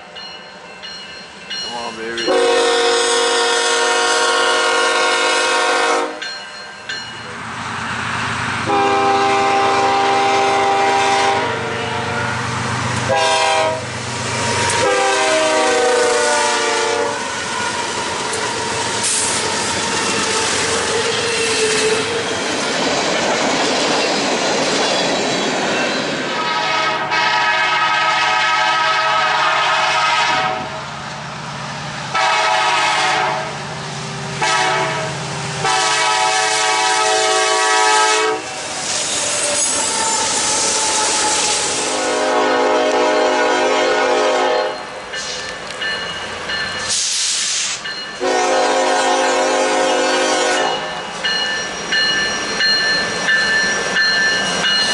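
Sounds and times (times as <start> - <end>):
train cars rumbling and clattering: 0.0 - 54.9
locomotive horn blasts: 2.3 - 6.2, 8.6 - 12.4, 13.1 - 13.9, 14.6 - 17.3, 26.4 - 30.8, 32.1 - 33.5, 34.4 - 38.5, 41.0 - 44.8, 48.2 - 50.9.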